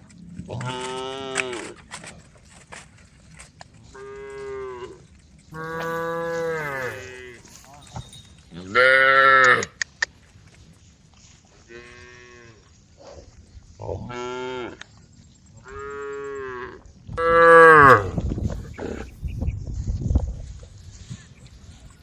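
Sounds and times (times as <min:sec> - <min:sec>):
cows mooing: 0:04.0 - 0:09.8, 0:15.6 - 0:19.2.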